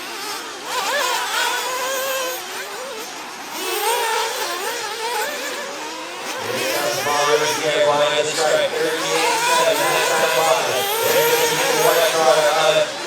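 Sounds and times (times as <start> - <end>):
model car engines buzzing: 0.0 - 13.0.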